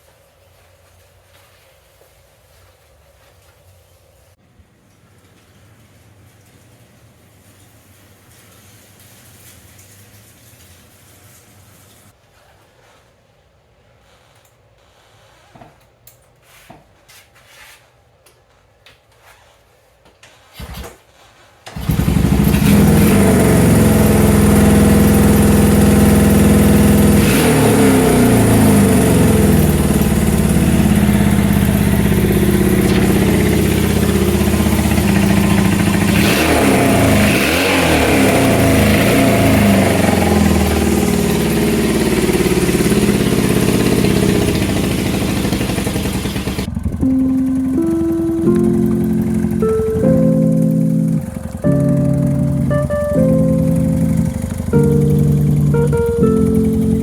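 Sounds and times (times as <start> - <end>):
kick-start clicks and knocks: 21.7 - 47.3, 48.5 - 57.0
motorcycle engine running: 21.8 - 57.0.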